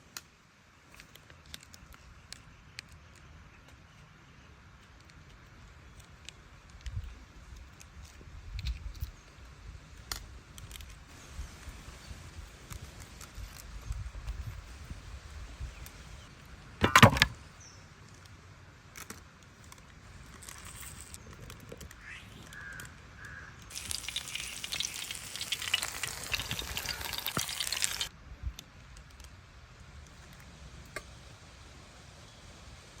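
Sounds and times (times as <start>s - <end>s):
short cawing calls: 22.0s - 23.5s
fish sizzling in hot oil: 23.7s - 28.1s.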